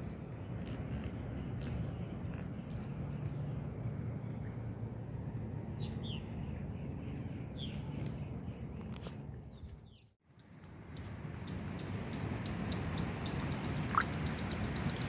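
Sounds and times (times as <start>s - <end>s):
birds chirping: 5.7s - 10.2s, 10.9s - 15.0s
creek water running: 11.0s - 15.0s.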